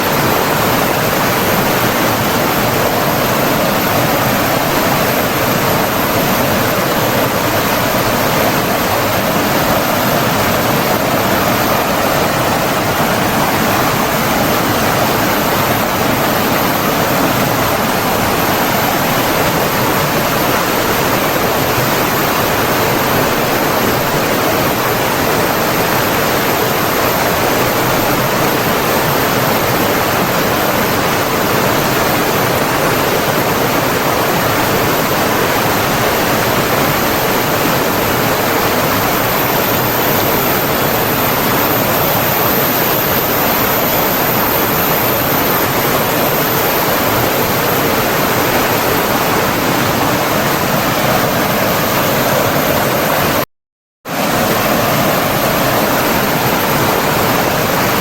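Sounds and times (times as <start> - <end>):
stream water rushing: 54.1 - 58.0.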